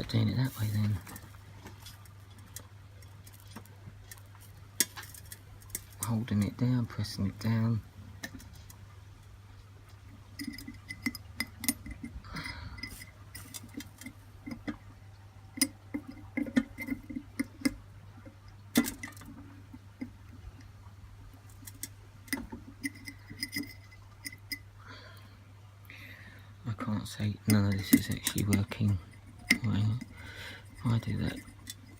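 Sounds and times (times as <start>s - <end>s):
steady low hum: 0.0s - 31.9s.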